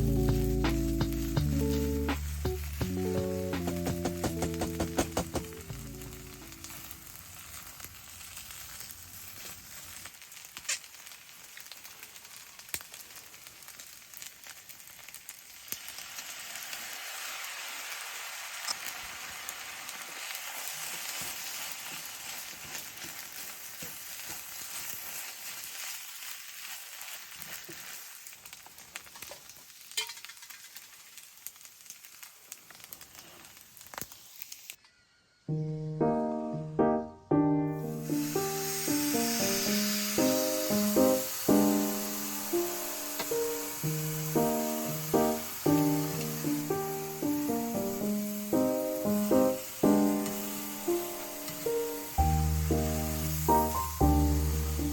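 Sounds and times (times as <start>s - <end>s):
food sizzling in a hot pan: 0.0s - 35.2s, 37.7s - 54.9s
sharp pops: 0.2s - 6.7s, 37.8s - 54.3s.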